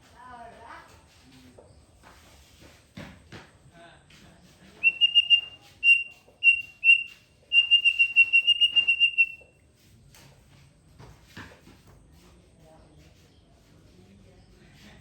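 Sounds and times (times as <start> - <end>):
songbird singing whistled notes: 4.8 - 9.4.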